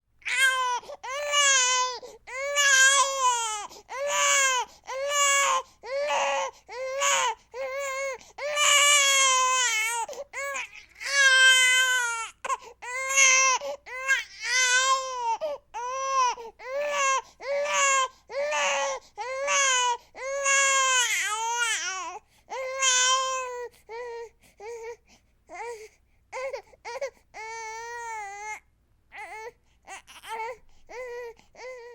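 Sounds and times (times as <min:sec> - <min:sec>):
baby crying: 0:00.2 - 0:25.8, 0:26.4 - 0:31.9.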